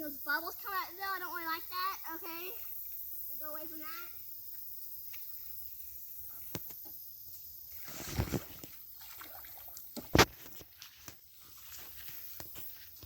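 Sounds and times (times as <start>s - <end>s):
water sloshing: 8.4s - 11.0s.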